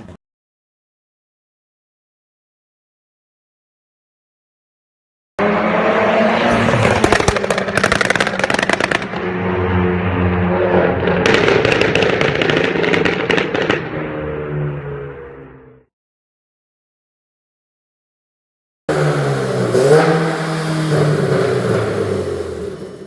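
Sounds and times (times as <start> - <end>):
car engine revving: 5.4 - 12.3, 18.9 - 23.0
exhaust crackles and pops: 6.8 - 9.2, 11.0 - 14.0.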